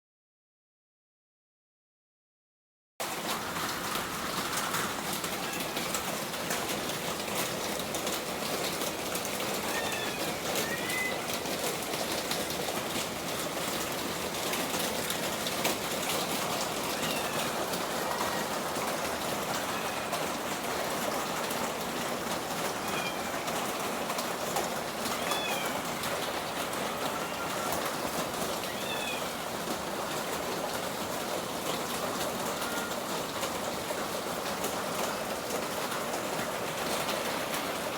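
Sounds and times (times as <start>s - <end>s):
heavy rain falling: 3.0s - 37.9s.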